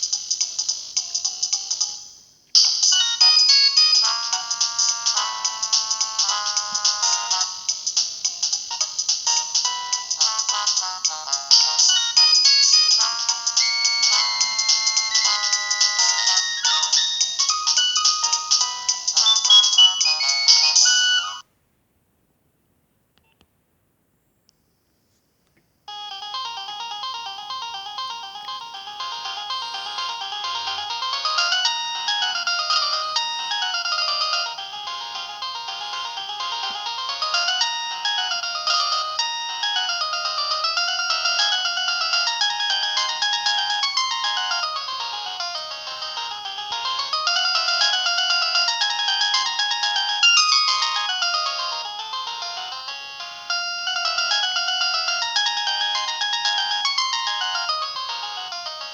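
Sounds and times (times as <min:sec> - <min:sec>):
synthesized ringtone tune: 0:02.6 - 0:21.4, 0:25.9 - 0:58.9.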